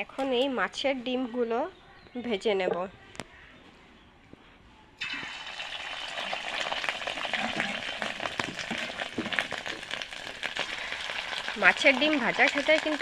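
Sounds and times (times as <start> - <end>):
fish roe sizzling in oil: 5.0 - 13.0.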